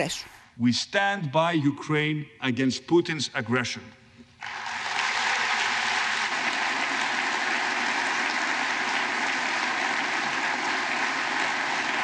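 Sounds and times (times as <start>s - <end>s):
large audience applauding: 4.4s - 12.0s.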